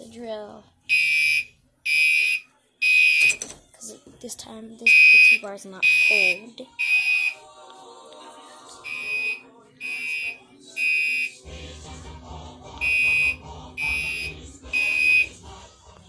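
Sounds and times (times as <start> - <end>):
fire alarm horn blasts: 0.9 - 3.4, 4.9 - 7.4, 8.9 - 11.4, 12.8 - 15.4.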